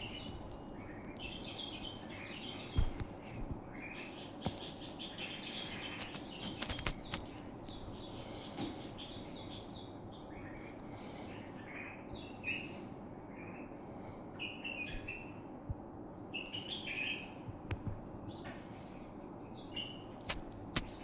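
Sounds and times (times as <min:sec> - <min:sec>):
small songbirds chirping: 0:00.0 - 0:21.0
sharp knocks: 0:02.8 - 0:03.2.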